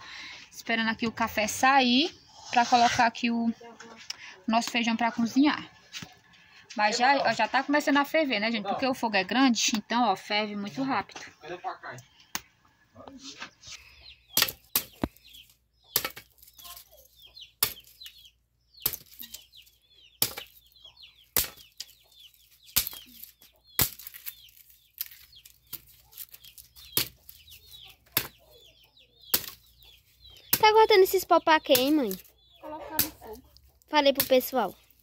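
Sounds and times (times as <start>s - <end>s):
birds calling: 0.0s - 35.0s
chickens calling: 10.1s - 35.0s
axe chopping kindling: 14.3s - 16.9s, 17.6s - 18.2s, 18.8s - 19.5s, 20.1s - 28.5s, 29.3s - 29.8s, 30.4s - 31.0s, 31.6s - 32.3s, 32.9s - 33.3s, 34.0s - 34.8s.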